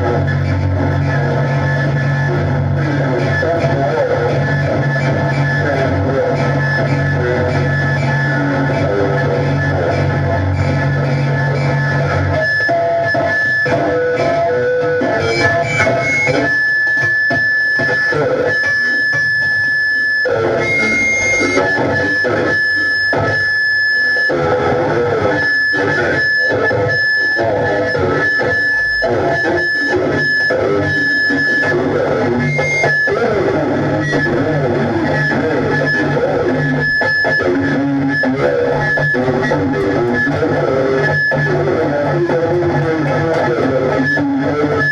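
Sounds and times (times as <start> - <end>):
guitar and effects: 0.0 - 44.9
high held tone: 15.0 - 16.8, 20.3 - 22.0.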